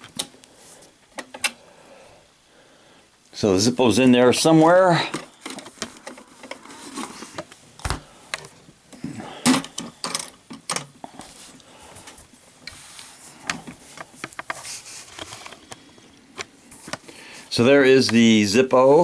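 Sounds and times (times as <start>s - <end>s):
sharp knock: 7.8s - 8.1s
dull thump: 7.8s - 8.2s.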